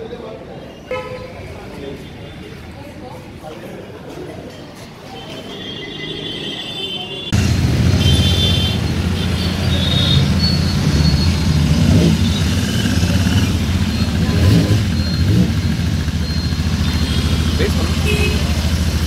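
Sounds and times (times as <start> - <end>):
motorcycle engine running: 7.3 - 19.0.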